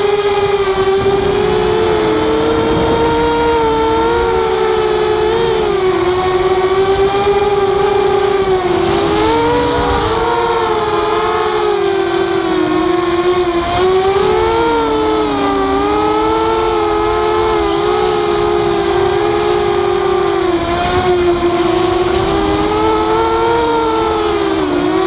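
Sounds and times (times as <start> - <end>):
quadcopter motors whining: 0.0 - 25.0.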